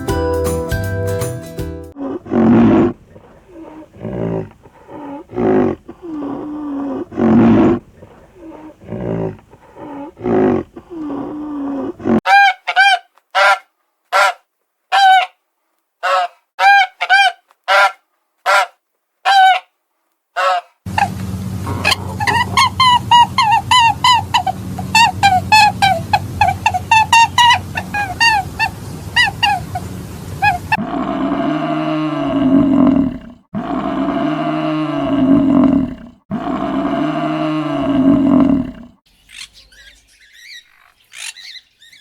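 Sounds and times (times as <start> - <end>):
deep rough animal calls: 2.0 - 12.2, 20.5 - 39.5
short high honking calls: 20.4 - 30.8.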